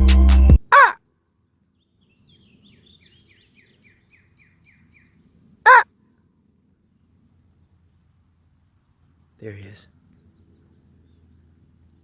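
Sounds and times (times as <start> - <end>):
music: 0.0 - 0.6
crow cawing: 0.7 - 1.0
small bird chirping: 1.9 - 5.8.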